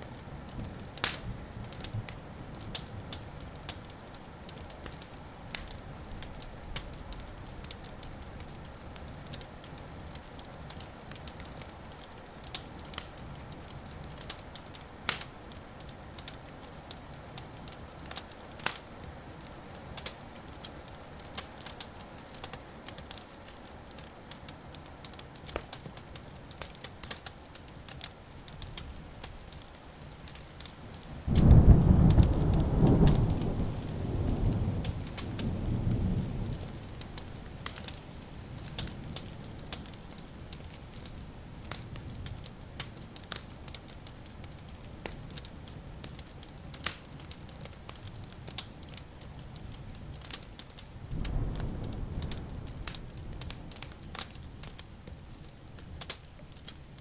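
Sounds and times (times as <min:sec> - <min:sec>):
wood fire crackling and popping: 0:00.0 - 0:57.0
rolling thunder: 0:31.2 - 0:37.0, 0:51.1 - 0:53.5.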